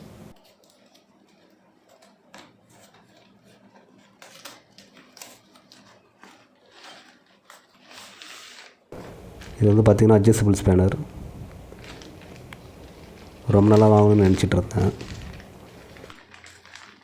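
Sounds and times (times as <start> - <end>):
cardboard box rustling and crinkling: 9.0 - 17.0.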